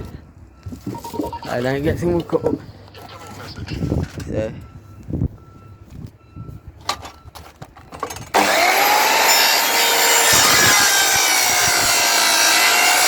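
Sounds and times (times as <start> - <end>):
electric saw cutting wood: 8.3 - 13.0.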